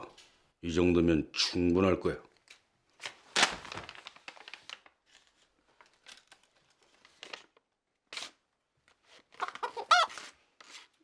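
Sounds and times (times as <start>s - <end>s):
faint rustling and crinkling: 2.4s - 11.0s.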